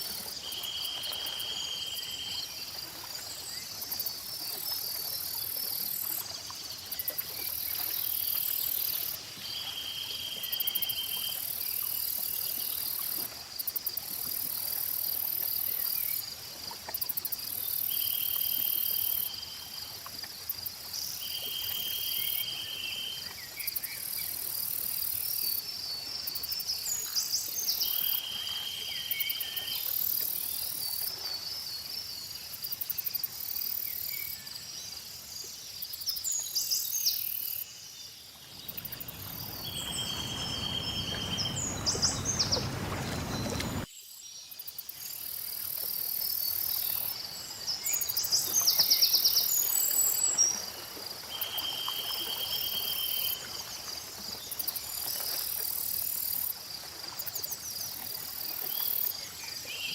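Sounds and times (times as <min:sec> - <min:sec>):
insects chirping: 0:00.0 - 0:59.9
bird chirps: 0:38.7 - 0:43.9.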